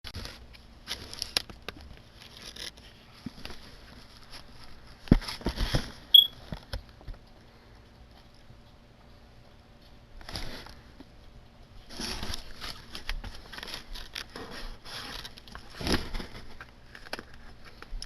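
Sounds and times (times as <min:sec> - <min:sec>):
packaging rustling and clicking: 0:12.0 - 0:18.0.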